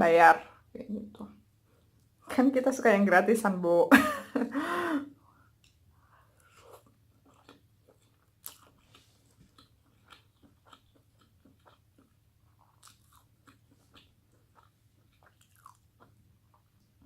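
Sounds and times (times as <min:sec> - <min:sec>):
person chewing: 0:05.4 - 0:17.0.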